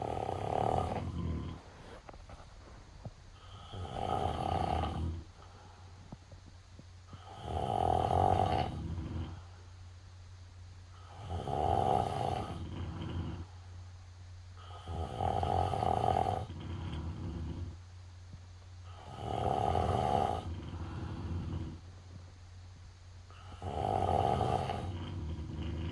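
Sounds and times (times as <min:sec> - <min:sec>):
rasping snores: 0:00.0 - 0:02.0, 0:03.4 - 0:05.3, 0:07.1 - 0:09.4, 0:11.0 - 0:13.5, 0:14.6 - 0:17.8, 0:18.8 - 0:21.8, 0:23.3 - 0:25.9.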